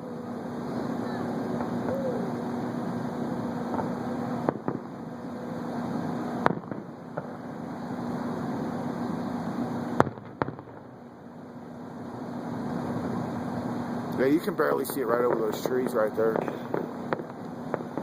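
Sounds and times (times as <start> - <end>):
low hum: 0.0 - 18.0
distant fireworks bangs: 0.4 - 11.0, 12.2 - 18.0.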